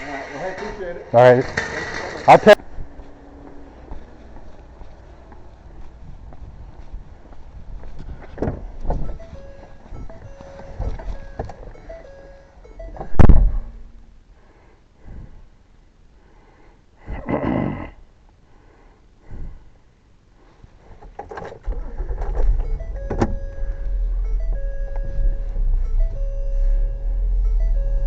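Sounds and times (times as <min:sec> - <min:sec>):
steady low rumble: 0:12.7 - 0:16.2, 0:21.8 - 0:28.0
loud thunk: 0:13.0 - 0:13.8.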